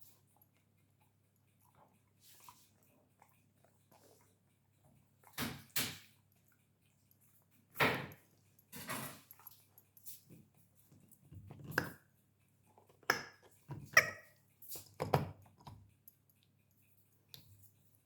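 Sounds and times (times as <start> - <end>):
teeth clicking on rubber: 11.5 - 16.6
squeaky toy squeaks: 13.9 - 14.3.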